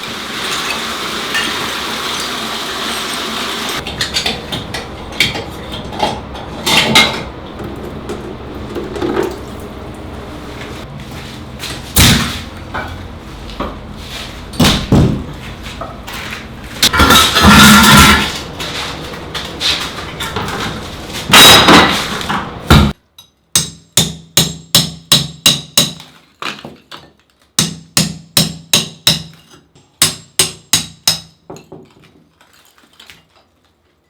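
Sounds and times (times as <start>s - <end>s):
renovation knocks and clatter: 0.4s - 9.9s, 10.6s - 23.0s.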